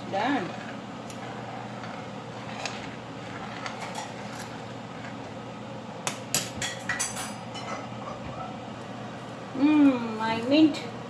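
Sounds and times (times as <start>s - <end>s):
steady low hum: 0.0s - 11.0s
metal cookware clinking: 6.3s - 7.9s.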